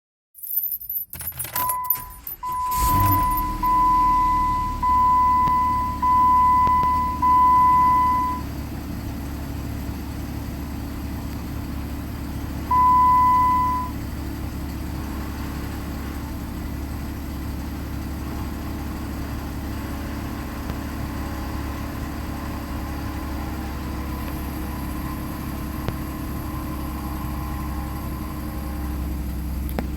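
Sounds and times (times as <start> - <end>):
car engine starting and idling: 1.1 - 29.9
beeping warning chime: 1.5 - 8.5, 12.7 - 14.0.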